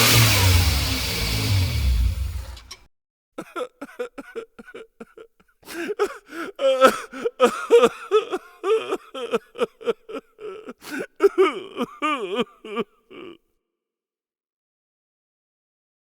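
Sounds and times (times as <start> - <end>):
person making choppy vocal sounds: 3.4 - 13.4.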